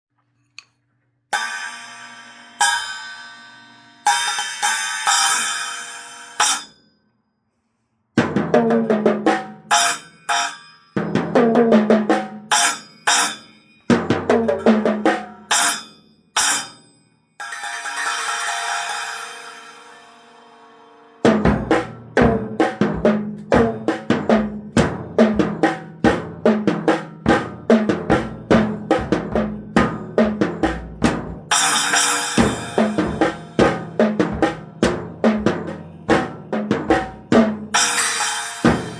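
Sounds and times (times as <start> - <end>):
cymbal strikes ringing: 1.3 - 6.8, 9.7 - 11.3, 12.5 - 14.1, 15.2 - 24.6, 27.4 - 38.9
drum fills with bass drum: 8.2 - 9.9, 11.0 - 12.8, 13.9 - 15.8, 21.2 - 38.9.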